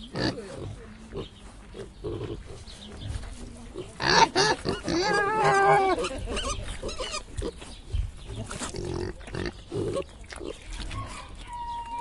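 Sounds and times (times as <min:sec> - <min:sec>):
pigs grunting and squealing: 0:04.0 - 0:07.6, 0:08.4 - 0:12.0.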